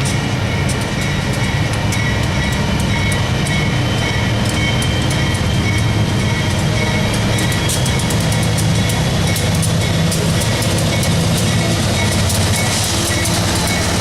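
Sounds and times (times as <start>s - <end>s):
high train tones: 0.0s - 14.0s
train rumbling: 0.0s - 14.0s
wheels clicking over rail joints: 0.0s - 14.0s.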